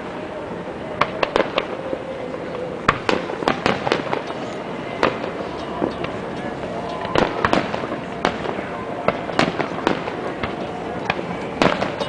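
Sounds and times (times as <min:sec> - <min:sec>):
fireworks bangs and pops: 0:02.9 - 0:06.3, 0:07.1 - 0:12.0.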